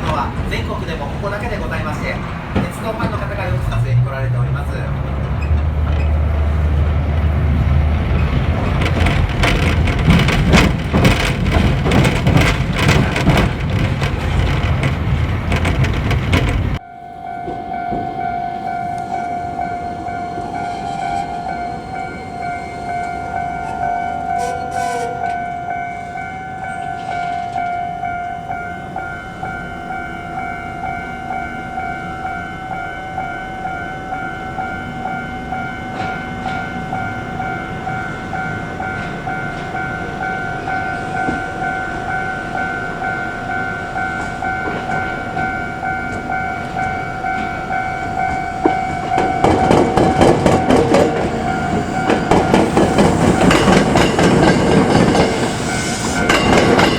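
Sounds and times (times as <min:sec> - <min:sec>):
wheels clattering over rails: 0:00.0 - 0:16.8, 0:35.6 - 0:56.9
train running whine and rumble: 0:00.0 - 0:56.9.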